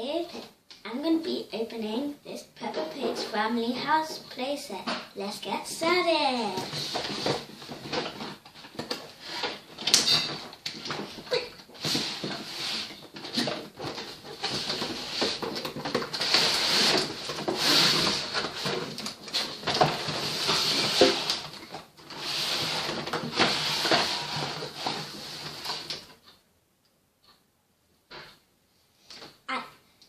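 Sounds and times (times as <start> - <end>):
packaging rustling and tearing: 10.8 - 26.0.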